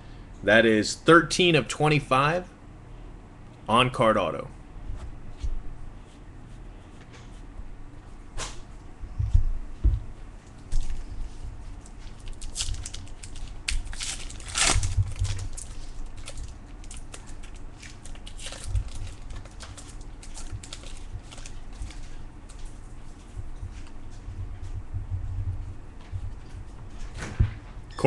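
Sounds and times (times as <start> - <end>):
card packaging rustling and crinkling: 10.6 - 24.0.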